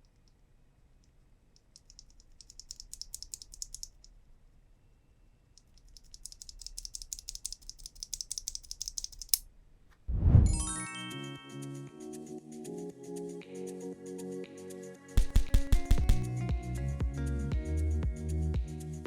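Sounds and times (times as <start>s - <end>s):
mechanical keyboard typing: 1.8s - 4.0s, 5.6s - 9.4s, 15.2s - 16.3s.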